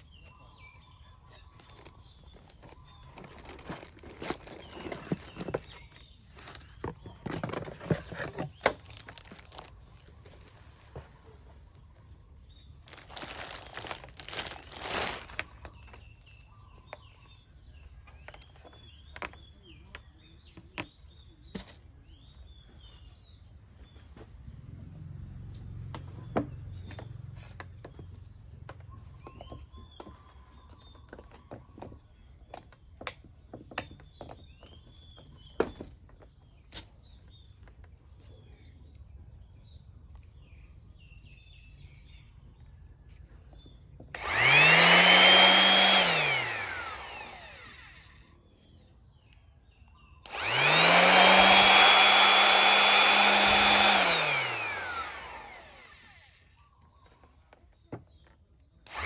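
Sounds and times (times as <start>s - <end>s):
small birds chirping: 0.0s - 59.0s
packaging rustling: 1.6s - 11.2s, 12.8s - 16.0s.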